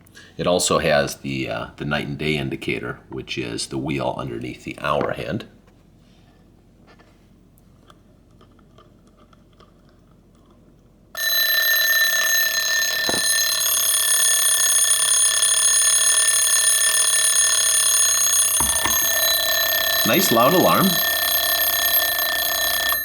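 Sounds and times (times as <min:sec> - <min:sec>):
alarm clock ringing: 0:11.2 - 0:23.0.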